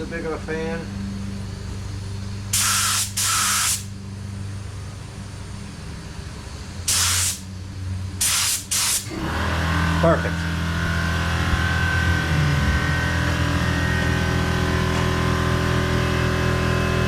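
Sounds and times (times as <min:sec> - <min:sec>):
steady low hum: 0:00.0 - 0:17.0
spray gun hissing blasts: 0:02.5 - 0:03.9, 0:06.9 - 0:07.5, 0:08.2 - 0:09.1.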